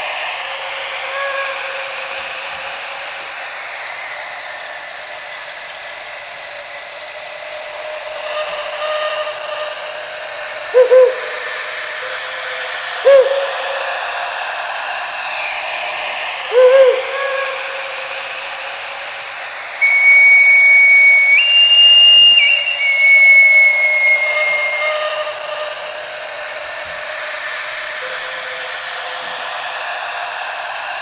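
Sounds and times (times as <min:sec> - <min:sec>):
whistled bird calls: 0:10.6 - 0:14.2, 0:16.5 - 0:18.6, 0:19.8 - 0:26.3.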